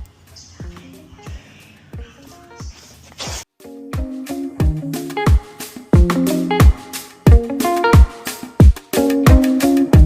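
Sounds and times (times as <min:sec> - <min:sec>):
kick drum thumps: 0:06.0 - 0:09.4.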